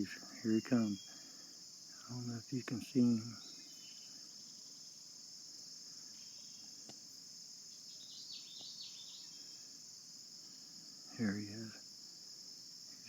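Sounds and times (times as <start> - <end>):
insect chorus trilling: 0.0 - 13.0.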